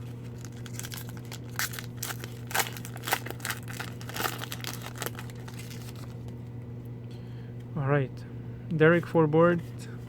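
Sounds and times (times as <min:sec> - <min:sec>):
card pack wrapper crinkling and tearing: 0:00.0 - 0:06.4
steady low hum: 0:00.0 - 0:10.0.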